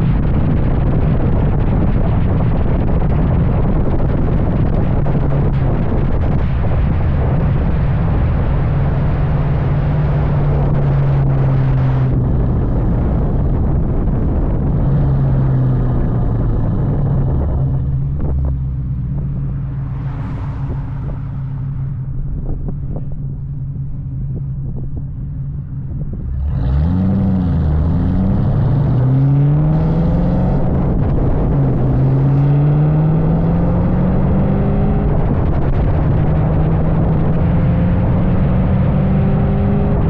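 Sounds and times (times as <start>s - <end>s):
car engine driving: 0.0s - 40.0s.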